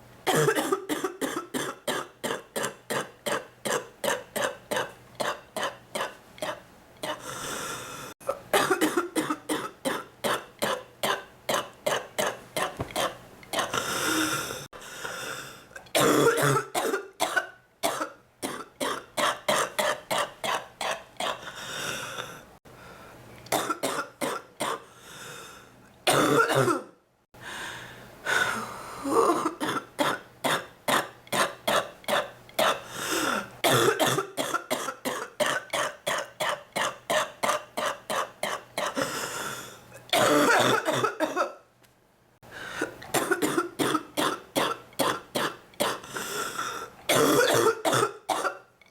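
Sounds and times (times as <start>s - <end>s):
woman coughing: 0.3s - 7.2s, 8.2s - 13.8s, 15.9s - 21.4s, 23.5s - 24.8s, 26.1s - 27.0s, 29.1s - 32.8s, 33.6s - 39.1s, 40.1s - 41.6s, 43.1s - 46.1s, 47.1s - 48.7s.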